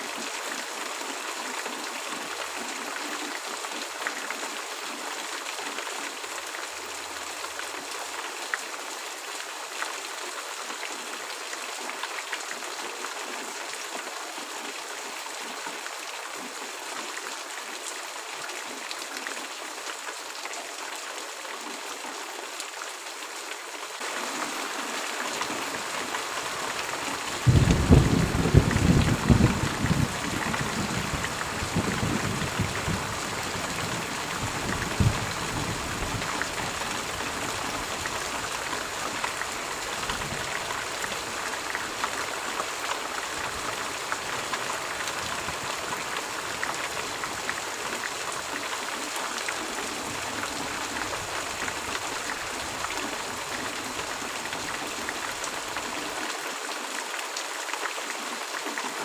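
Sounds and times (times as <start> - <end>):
heavy rain falling: 0.0 - 59.0
thunder rumble: 27.4 - 33.0.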